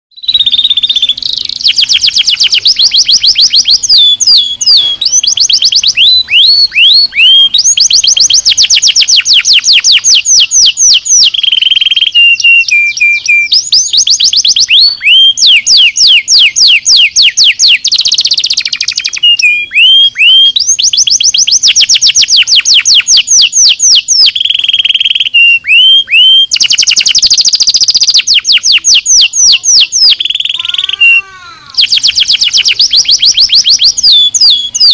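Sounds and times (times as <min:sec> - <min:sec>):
canary singing trills: 0:00.1 - 0:34.9.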